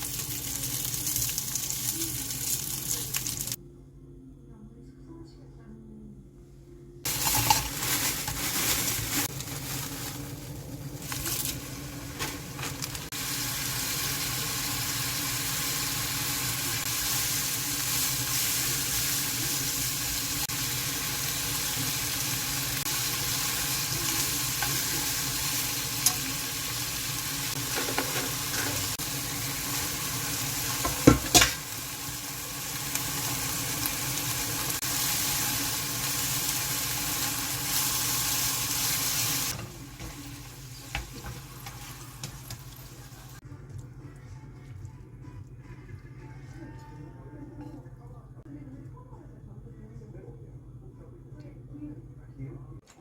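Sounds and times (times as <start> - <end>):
food sizzling in a pan: 0.0 - 3.6, 7.1 - 43.4.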